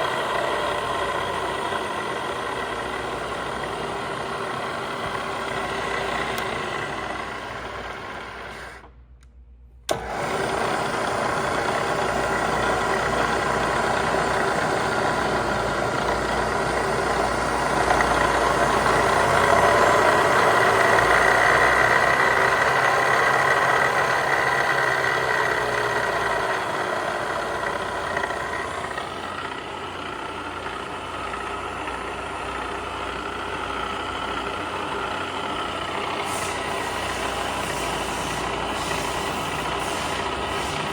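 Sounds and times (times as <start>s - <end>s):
milling machine hum and whine: 9.9s - 40.9s.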